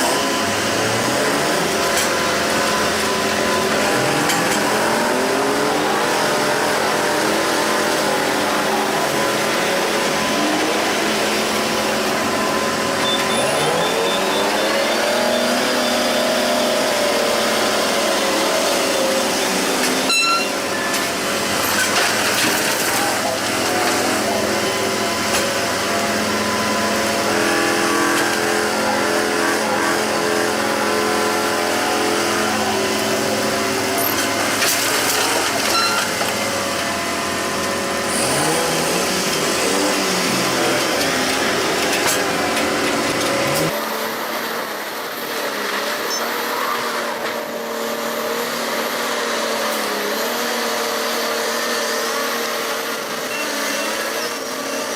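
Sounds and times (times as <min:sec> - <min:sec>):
heavy machinery engines running: 0:00.0 - 0:54.9.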